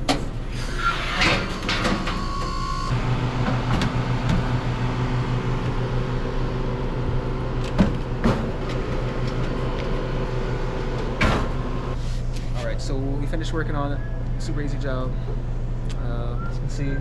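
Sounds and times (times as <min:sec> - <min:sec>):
refrigeration unit humming: 0:00.0 - 0:17.0
fan airy rush: 0:02.9 - 0:13.0.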